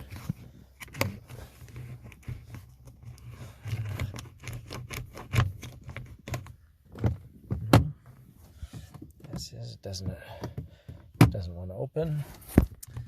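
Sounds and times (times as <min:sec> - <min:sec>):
plastic strip clicking against car door: 0:00.8 - 0:07.9.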